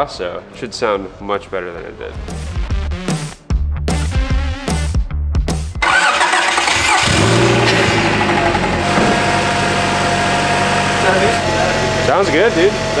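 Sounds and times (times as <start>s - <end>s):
music: 0.0s - 6.9s
car engine starting and idling: 5.8s - 13.0s.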